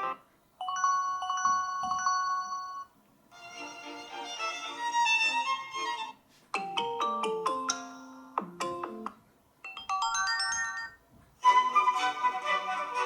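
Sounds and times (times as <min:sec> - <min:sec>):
ringtone melody: 0:00.0 - 0:02.9, 0:06.6 - 0:12.4
ringtone chime: 0:00.6 - 0:02.9, 0:09.6 - 0:11.0.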